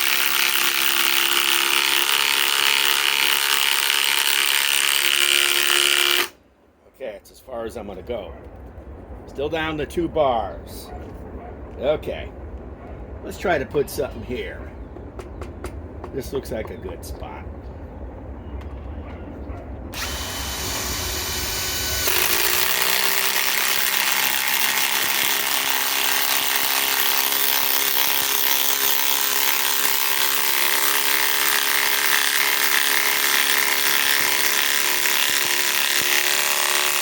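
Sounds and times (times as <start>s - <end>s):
impact wrench hammering: 20.0s - 37.0s.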